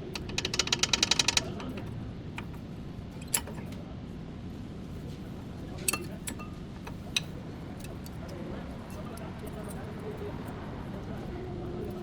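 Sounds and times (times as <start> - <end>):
ratchet wrench clicking: 0.0 - 2.6.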